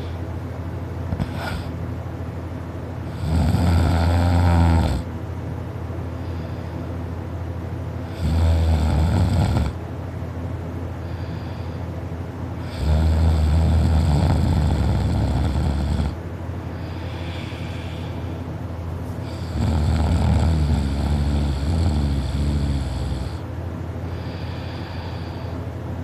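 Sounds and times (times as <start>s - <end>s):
person snoring: 1.2s - 1.7s, 3.1s - 5.1s, 8.1s - 9.8s, 12.6s - 16.2s, 19.2s - 23.4s
quiet breathing: 6.1s - 7.1s, 10.9s - 12.8s, 14.4s - 25.8s.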